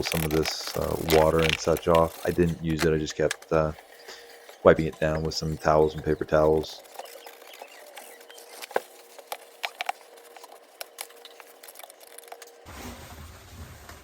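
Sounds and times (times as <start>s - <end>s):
faint steady hum: 0.0s - 12.7s.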